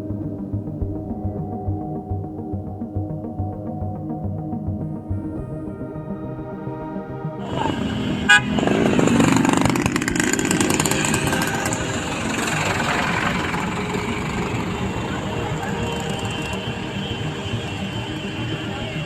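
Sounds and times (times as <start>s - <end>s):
intro music: 0.0s - 19.0s
vehicles and motorcycles running: 7.4s - 19.0s.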